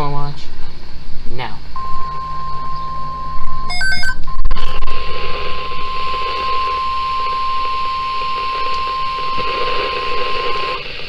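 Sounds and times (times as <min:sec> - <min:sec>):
radio static hiss: 0:00.8 - 0:11.0
high-pitched electronic alarm tone: 0:01.8 - 0:04.2
short beeps: 0:01.8 - 0:04.5
click: 0:08.7 - 0:08.9.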